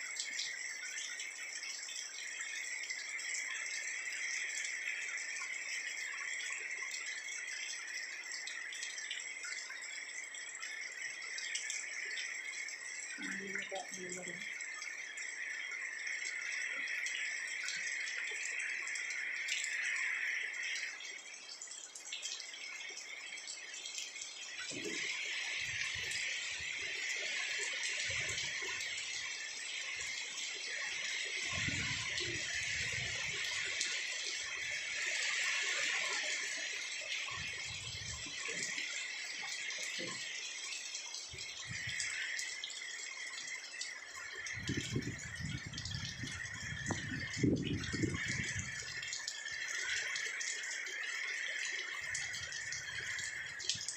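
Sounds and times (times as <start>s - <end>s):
heavy rain pouring: 24.5s - 42.6s, 44.5s - 53.9s
wind rumbling against microphone: 31.4s - 33.4s, 44.5s - 48.9s.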